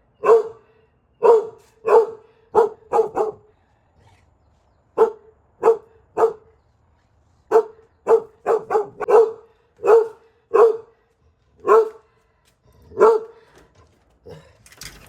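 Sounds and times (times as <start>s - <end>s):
dog barking: 0.2s - 3.5s, 5.0s - 6.5s, 7.5s - 10.9s, 11.6s - 12.0s, 12.9s - 13.4s.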